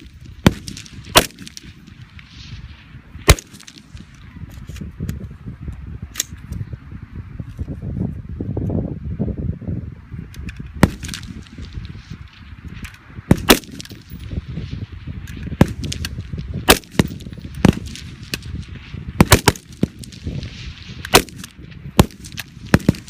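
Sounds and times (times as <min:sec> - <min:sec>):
gunshots: 0:00.0 - 0:01.7, 0:03.2 - 0:04.0, 0:13.3 - 0:14.0, 0:15.6 - 0:18.4, 0:19.2 - 0:20.4, 0:21.0 - 0:23.0.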